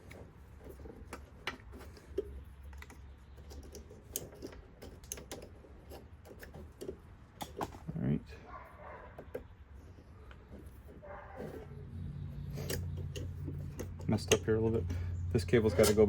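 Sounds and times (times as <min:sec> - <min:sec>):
cable and spring clicking: 0:12.4 - 0:16.0.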